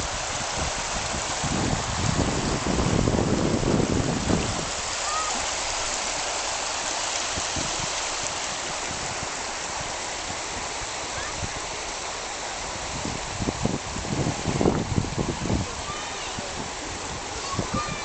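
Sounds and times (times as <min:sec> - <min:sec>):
river water rushing and splashing: 0:00.0 - 0:18.0.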